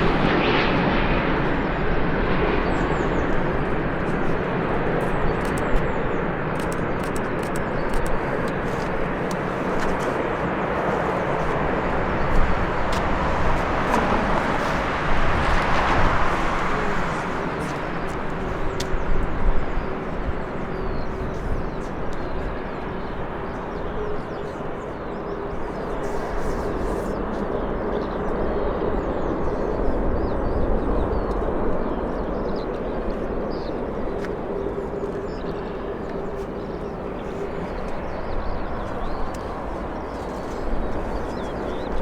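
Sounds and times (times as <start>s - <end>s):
jet engines running: 0.0s - 42.0s
small birds chirping: 2.6s - 13.0s.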